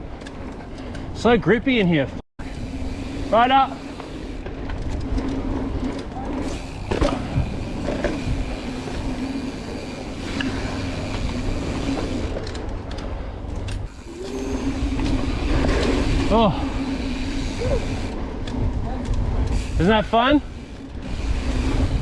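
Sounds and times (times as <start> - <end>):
tyres rolling on dirt: 0.0 - 22.0
wind rushing over microphone: 2.4 - 12.4, 13.8 - 22.0
bike knocks and rattles: 4.0 - 14.0.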